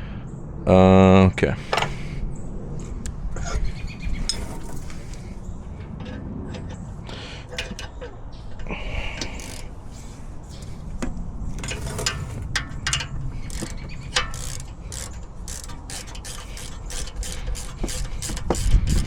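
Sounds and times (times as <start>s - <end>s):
ratchet wrench clicking: 5.8s - 19.0s.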